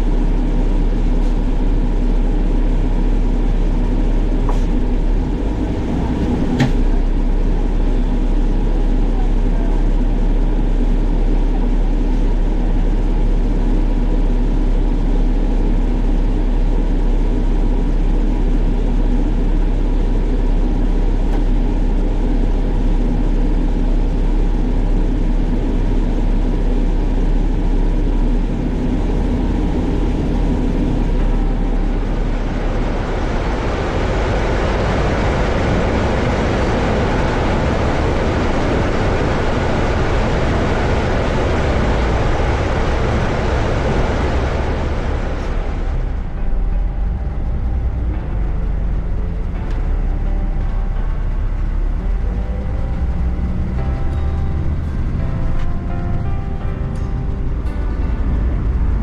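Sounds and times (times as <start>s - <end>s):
diesel engine droning: 0.0s - 59.0s
loud rushing noise: 21.4s - 59.0s.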